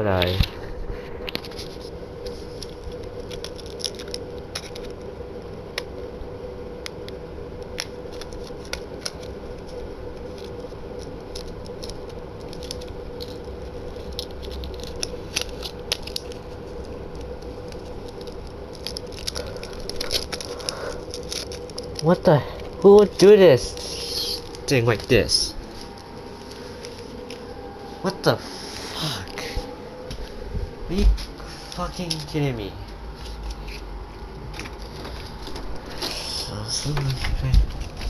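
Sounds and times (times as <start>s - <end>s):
steady background hum: 0.0s - 38.0s
packaging clicks and crackles: 2.5s - 5.1s, 7.0s - 27.4s, 31.7s - 32.5s.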